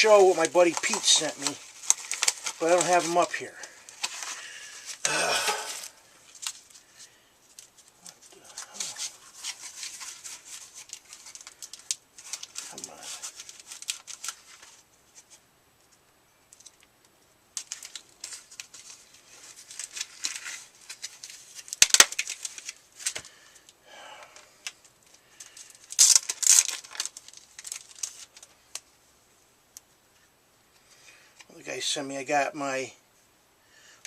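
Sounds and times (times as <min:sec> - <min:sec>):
package tearing and crinkling: 0:00.0 - 0:14.8, 0:17.6 - 0:23.3, 0:24.6 - 0:28.8.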